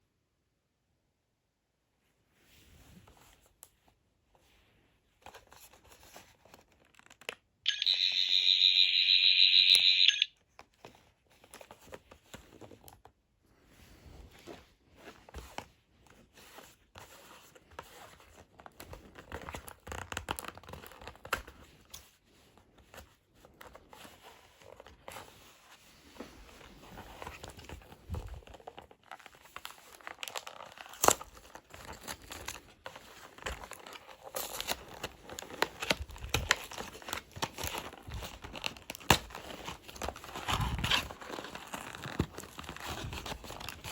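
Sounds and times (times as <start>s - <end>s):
packaging rustling and crinkling: 14.4s - 43.9s.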